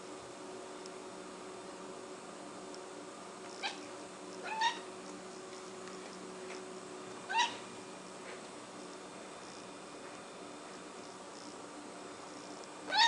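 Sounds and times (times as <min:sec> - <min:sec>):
kitten high-pitched calls: 0:03.6 - 0:03.8, 0:04.4 - 0:04.9, 0:07.3 - 0:07.6.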